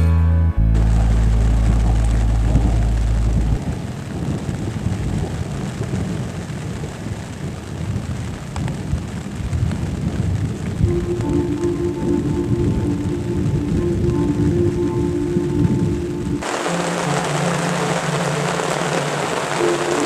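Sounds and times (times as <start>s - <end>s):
rain falling: 0.7s - 20.0s
thunder rumbling: 0.8s - 20.0s.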